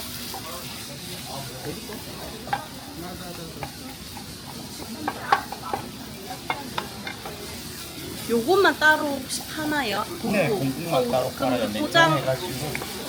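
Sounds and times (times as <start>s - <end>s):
food sizzling in a pan: 0.0s - 13.0s
utensil clicking against pan: 1.6s - 8.3s, 12.6s - 13.0s.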